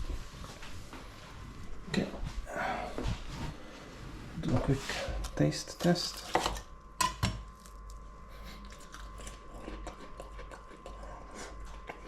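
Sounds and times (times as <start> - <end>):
person chewing food: 7.5 - 12.0.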